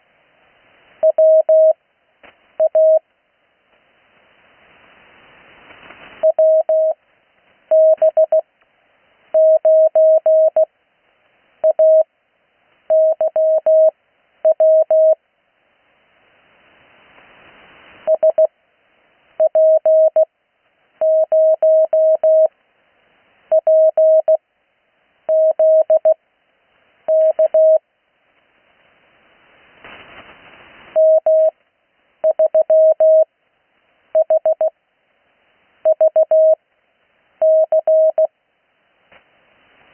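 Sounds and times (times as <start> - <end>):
morse code tone: 2.6 - 3.0, 6.2 - 7.0, 7.7 - 8.4, 9.4 - 10.7, 11.6 - 12.0, 12.9 - 13.9, 14.5 - 15.2, 19.4 - 20.3, 21.0 - 22.5, 23.5 - 24.4, 25.3 - 26.2, 27.1 - 27.8, 31.0 - 31.5, 32.2 - 33.3, 34.2 - 34.7, 35.9 - 36.6, 37.4 - 38.3
radio hiss: 28.6 - 31.5.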